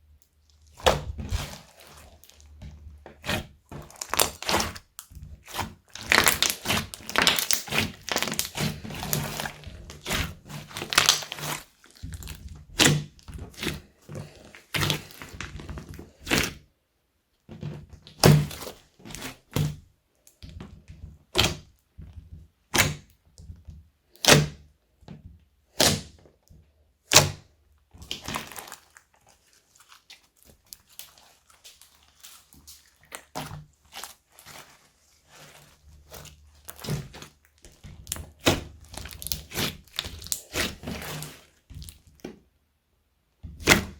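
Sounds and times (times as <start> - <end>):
slime crackling and squelching: 0.0 - 16.6, 18.0 - 19.8, 27.1 - 42.3, 43.4 - 43.9
slime popping: 3.2 - 13.8, 30.7 - 42.0.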